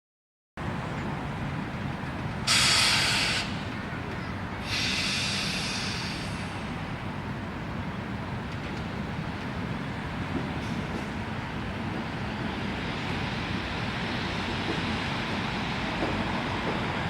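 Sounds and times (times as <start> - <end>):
compressed air hissing: 2.5 - 3.5, 4.7 - 6.5.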